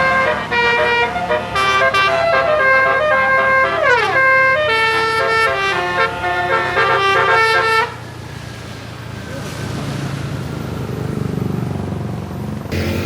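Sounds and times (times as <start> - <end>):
musical air horn melody: 0.0 - 8.0
vehicle engine hum: 0.0 - 13.0.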